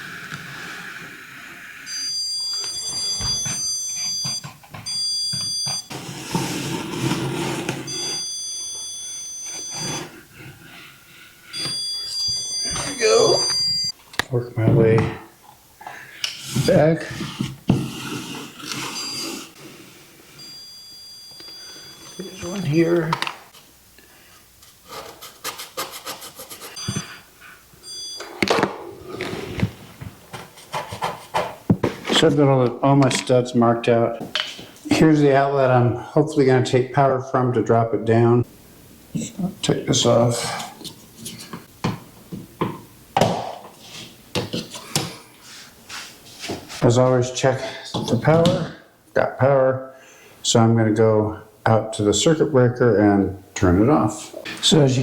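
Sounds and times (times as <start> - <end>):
stud finder high beep: 1.9 - 5.9, 7.8 - 10.2, 11.5 - 13.9, 18.9 - 19.4, 20.4 - 23.0, 26.8 - 27.2, 27.8 - 28.4
scraping on wall: 5.8 - 8.3
short electronic beeps: 26.8 - 27.1.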